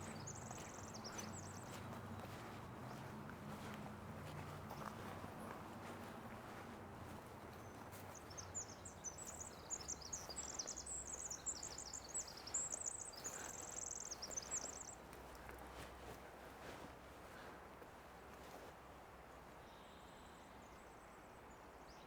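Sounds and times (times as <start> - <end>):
wren singing trills: 8.2 - 15.0.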